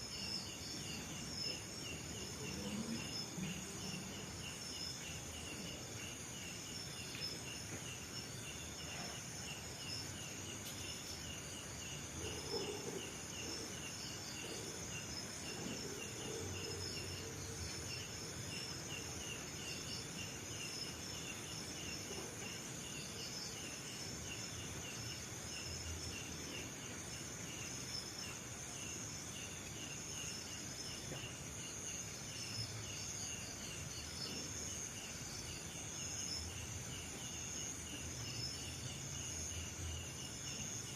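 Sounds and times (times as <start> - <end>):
cricket chirping: 0.0 - 40.9.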